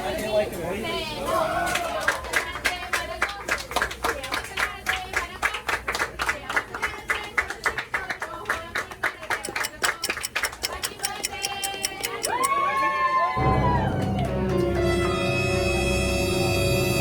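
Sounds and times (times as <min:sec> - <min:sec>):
rapid sharp clacks: 0:09.0 - 0:12.4.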